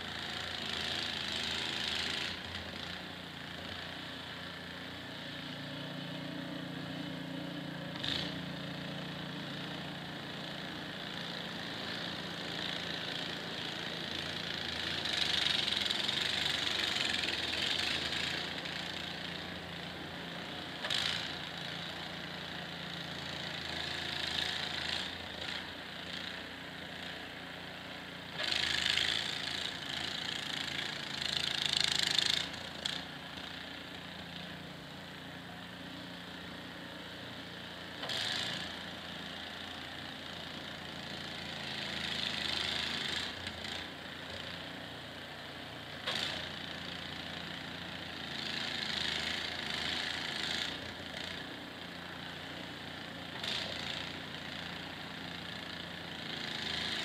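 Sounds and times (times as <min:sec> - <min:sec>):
engine running: 0:00.0 - 0:57.0.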